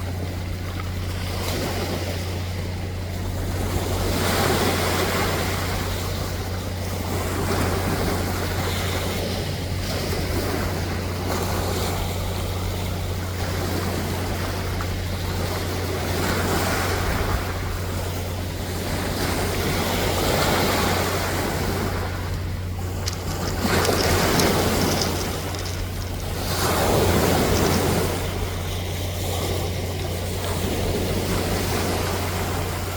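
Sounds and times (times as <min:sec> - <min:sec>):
sea waves breaking ashore: 0:00.0 - 0:32.9
steady low rumble: 0:17.2 - 0:32.9.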